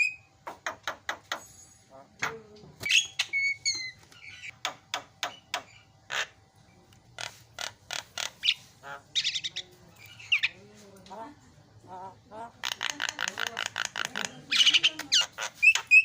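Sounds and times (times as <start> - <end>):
bird singing chips and whistles: 15.6 - 16.0.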